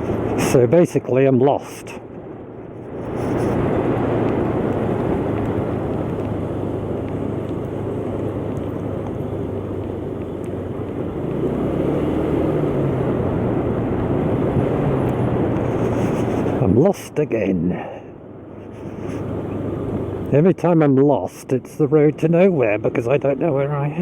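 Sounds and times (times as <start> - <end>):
wind and road noise: 0.0 - 24.0
motor scooter engine: 3.0 - 14.2.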